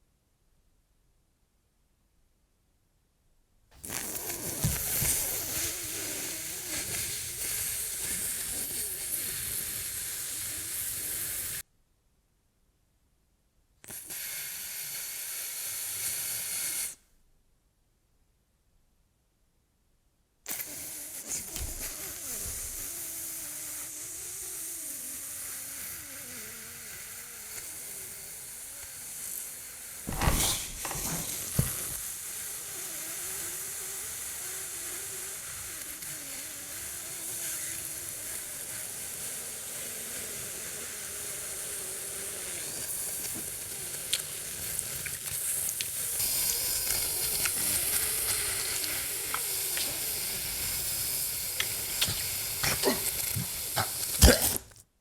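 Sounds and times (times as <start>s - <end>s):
steady hissing sizzle: 3.8s - 11.7s, 13.9s - 17.0s, 20.5s - 54.9s
loud sharp knocks: 30.1s - 32.0s.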